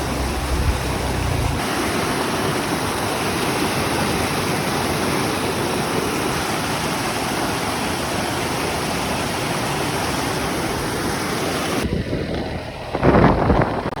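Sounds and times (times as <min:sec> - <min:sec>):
dull sound with louder bursts: 0:00.0 - 0:04.4
rushing water roaring: 0:00.0 - 0:12.0.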